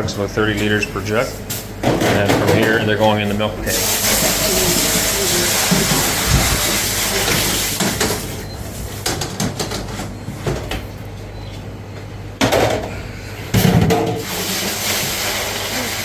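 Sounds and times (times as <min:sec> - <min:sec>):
steady low hum: 0:00.0 - 0:14.2
milk jugs knocking and clattering: 0:01.8 - 0:10.8, 0:12.4 - 0:15.6.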